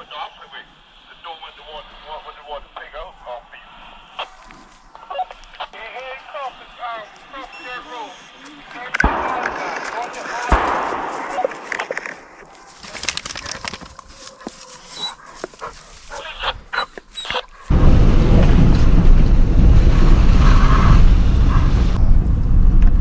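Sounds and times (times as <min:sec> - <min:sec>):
distant hounds yelping and baying: 0:02.9 - 0:17.7
clicks and rustles: 0:08.9 - 0:17.7
loud low rumble: 0:09.0 - 0:12.5, 0:17.7 - 0:23.0.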